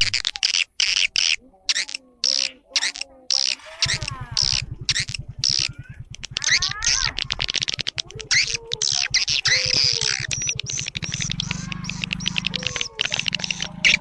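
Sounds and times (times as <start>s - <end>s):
swiftlets chirping and twittering: 0.1s - 14.0s
low pulsing hum: 3.8s - 12.6s.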